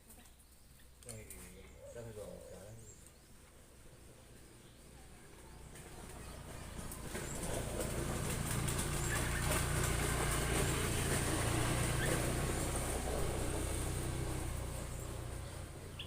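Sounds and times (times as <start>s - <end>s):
motor running: 6.6s - 15.8s.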